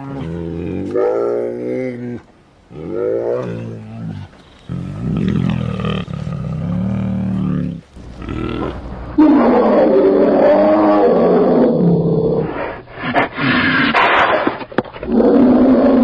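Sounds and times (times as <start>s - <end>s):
bear growling roar: 0.0s - 14.1s, 15.0s - 16.0s
loud rough roar: 4.7s - 12.0s.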